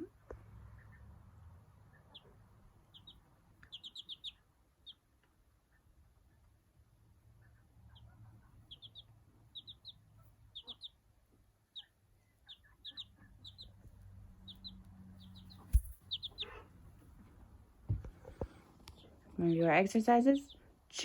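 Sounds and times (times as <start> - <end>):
chick peeping: 0.0 - 21.0
sharp tap: 15.7 - 16.0.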